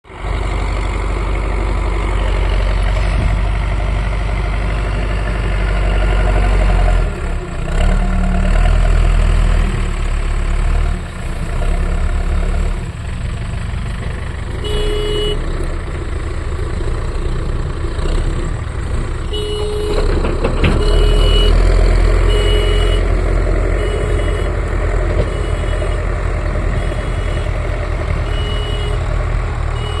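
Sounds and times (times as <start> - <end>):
heavy machine engine rumbling: 0.0 - 30.0
reversing alarm beeping: 20.7 - 26.0, 26.7 - 29.1.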